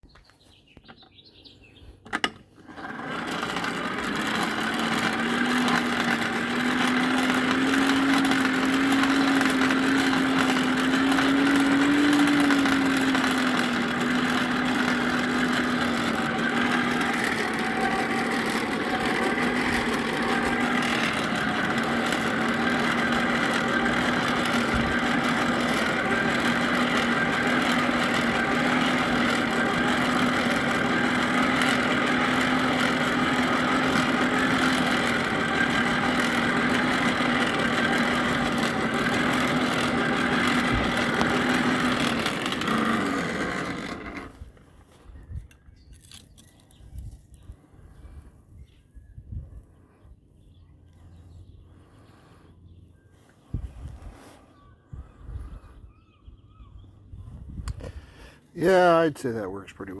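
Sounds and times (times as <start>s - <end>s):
electric blower humming: 2.1s - 45.0s, 57.6s - 60.0s.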